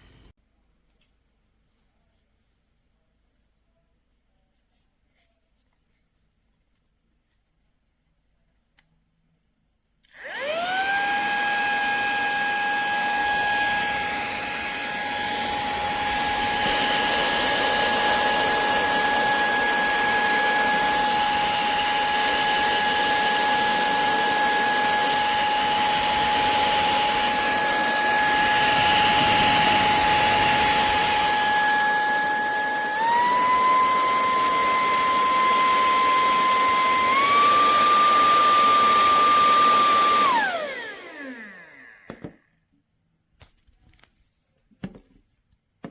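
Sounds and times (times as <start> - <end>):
handheld vacuum cleaner whining: 10.0 - 42.5.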